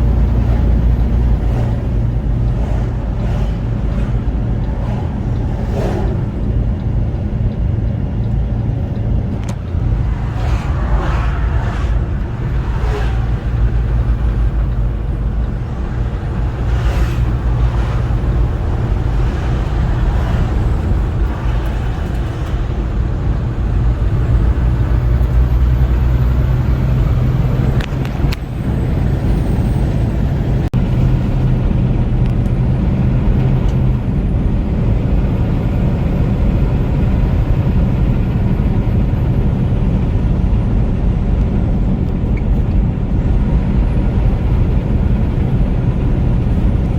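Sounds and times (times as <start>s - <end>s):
vehicle engine drone and road noise: 0.0s - 46.9s.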